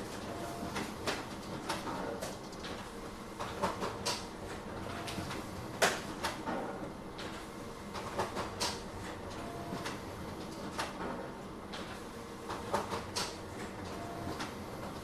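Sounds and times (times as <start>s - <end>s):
steady background hum: 0.0s - 15.0s.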